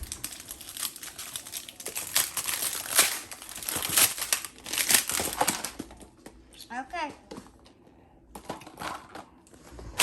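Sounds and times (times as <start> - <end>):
plastic packaging crinkling: 0.0 - 6.1.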